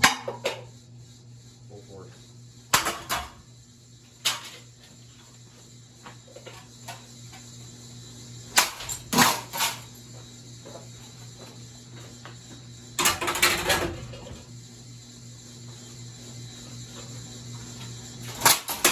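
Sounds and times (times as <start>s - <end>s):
plates crashing on fan blades: 0.0s - 0.7s, 2.7s - 3.5s, 4.2s - 4.6s, 8.5s - 9.9s, 13.0s - 14.4s, 18.2s - 18.9s
ceiling fan humming: 0.0s - 18.9s.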